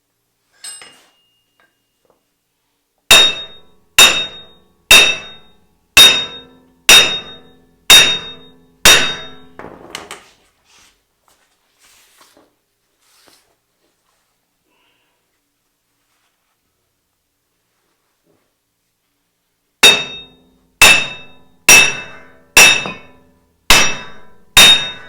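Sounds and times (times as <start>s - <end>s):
hammer striking metal hub: 3.1s - 9.6s, 19.8s - 25.0s.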